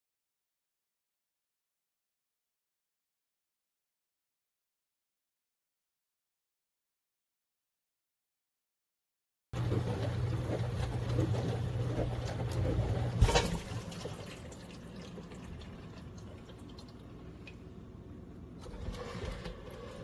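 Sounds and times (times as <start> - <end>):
dishwasher clunk: 9.6 - 14.0
water sloshing: 9.6 - 17.7
water trickling and dripping: 9.6 - 17.8
dishwasher pump motor hum: 9.6 - 20.0.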